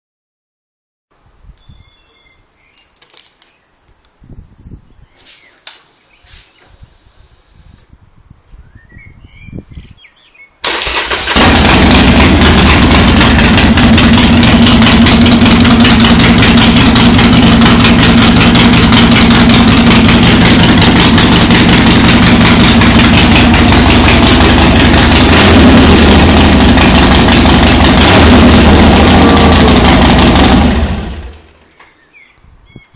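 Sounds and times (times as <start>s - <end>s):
motorcycle engine running: 10.8s - 31.6s.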